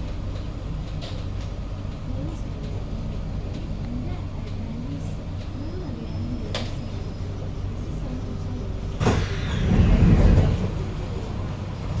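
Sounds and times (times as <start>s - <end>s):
train car low hum: 0.0s - 12.0s.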